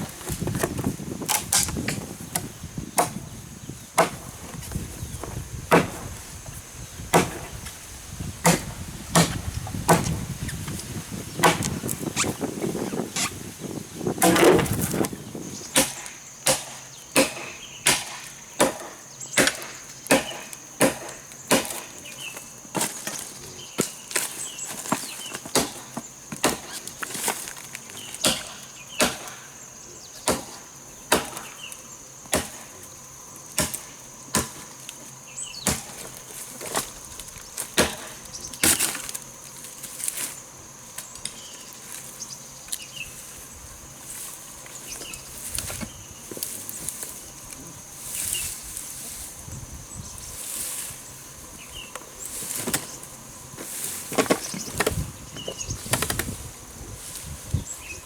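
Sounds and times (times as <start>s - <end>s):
blade chopping wood: 0.0s - 3.4s, 4.0s - 6.2s, 7.1s - 7.7s, 8.4s - 12.0s, 14.2s - 29.5s, 30.2s - 31.7s, 32.3s - 32.7s, 33.5s - 34.8s, 35.6s - 37.0s, 37.6s - 39.2s.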